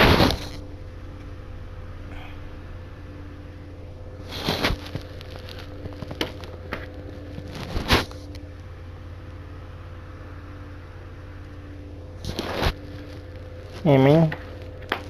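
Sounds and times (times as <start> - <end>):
steady low hum: 0.0 - 15.0
plastic packaging rustling: 4.2 - 8.4, 12.2 - 14.9.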